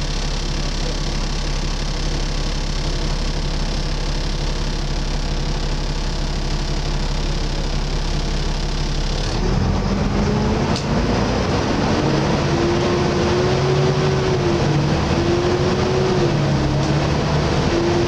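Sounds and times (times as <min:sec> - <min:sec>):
engine whine wavering in pitch: 0:06.4 - 0:18.0
bus diesel engine pulling away: 0:09.1 - 0:18.0.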